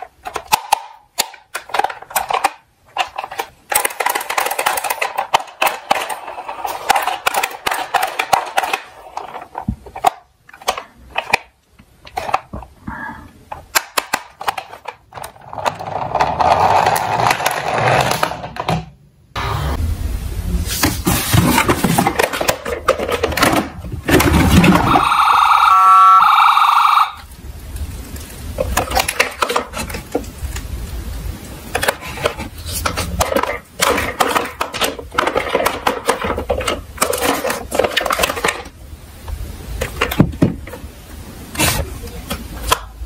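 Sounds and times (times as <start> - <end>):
toy cars clattering down a slope: 0.0 - 12.6, 13.5 - 18.9, 28.1 - 30.7, 31.7 - 38.8
electronic siren tone pulsing: 24.6 - 27.2.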